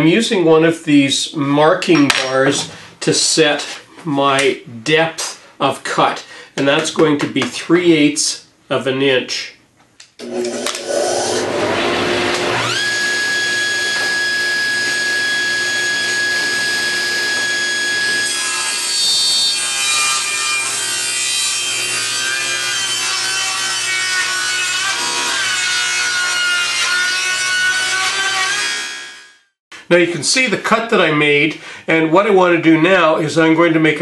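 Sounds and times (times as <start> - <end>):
saw cutting board: 10.2 - 29.4
table saw whine: 10.2 - 29.5.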